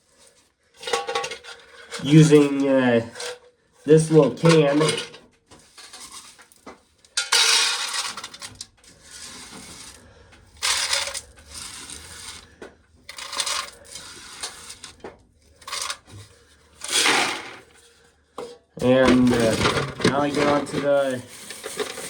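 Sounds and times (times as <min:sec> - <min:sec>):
dry corn kernels rattling: 0:07.2 - 0:08.5, 0:16.8 - 0:17.7, 0:18.8 - 0:22.0.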